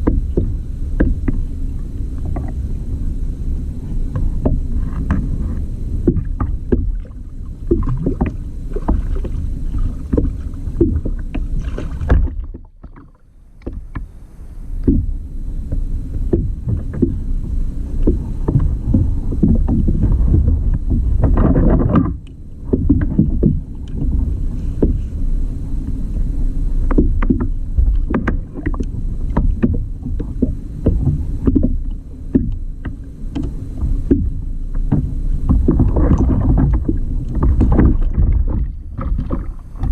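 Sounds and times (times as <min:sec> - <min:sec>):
water splashes: 0:00.0 - 0:03.2, 0:03.8 - 0:39.9
water and wind rumble on hull: 0:00.0 - 0:39.9
knocks on kayak hull: 0:10.1 - 0:13.0, 0:14.8 - 0:17.2, 0:26.9 - 0:39.9.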